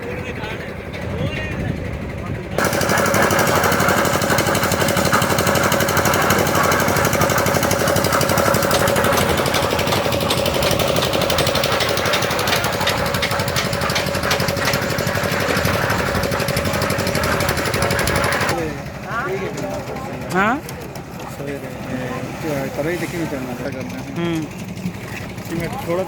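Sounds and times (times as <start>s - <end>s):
concrete mixer engine knocking: 0.0s - 26.0s.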